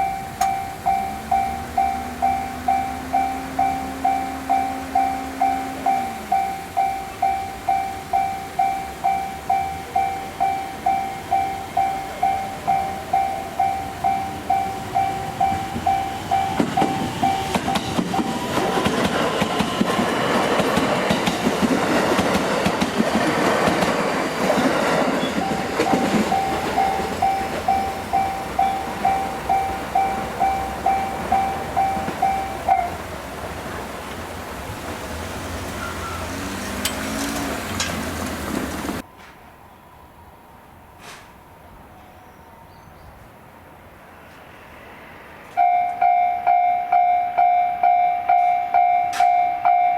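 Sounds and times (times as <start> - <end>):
level crossing alarm bell: 0.0 - 19.0, 24.6 - 33.1, 45.6 - 49.9
train wheels clattering on rails: 0.0 - 39.4.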